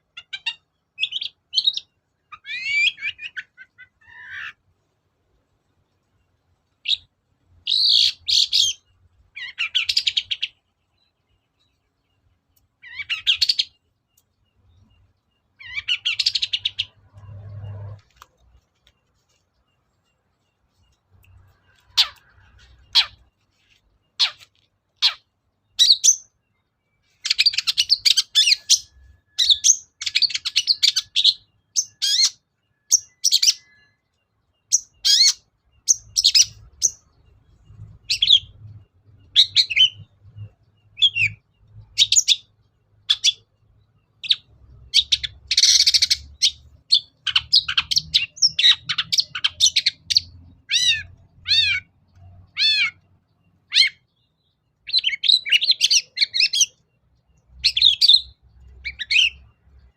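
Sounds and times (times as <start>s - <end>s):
shrike singing chirps and rasps: 0.0s - 4.6s, 6.8s - 34.0s, 34.6s - 59.9s.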